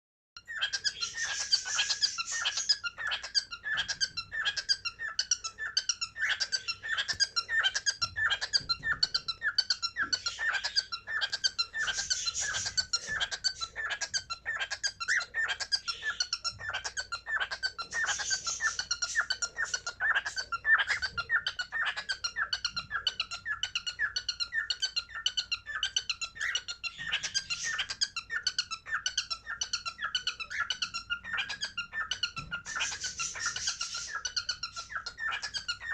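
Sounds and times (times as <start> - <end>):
cockatiel chirping: 0.4 - 35.9.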